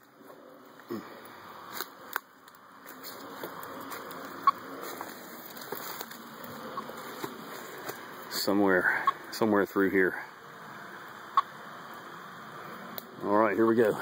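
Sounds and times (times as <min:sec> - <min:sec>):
twigs cracking and snapping: 0:01.6 - 0:08.2
footsteps through undergrowth: 0:01.7 - 0:08.3.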